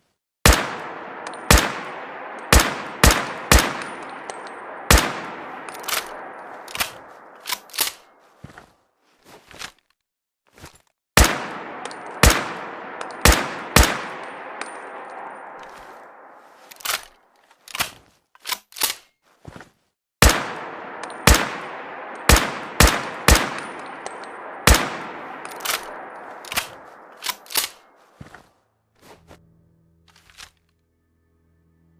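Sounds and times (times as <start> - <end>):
rifle shots with echo: 0.4 - 8.2, 11.2 - 17.2, 20.2 - 28.0.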